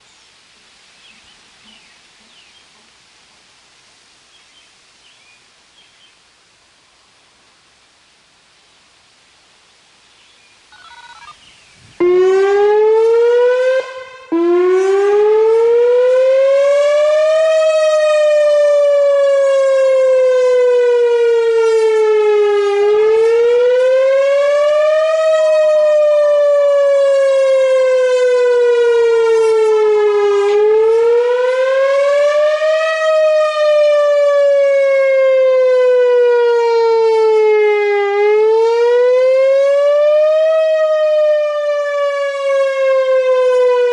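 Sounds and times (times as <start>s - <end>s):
warning siren wailing: 10.7s - 11.4s, 12.0s - 43.9s.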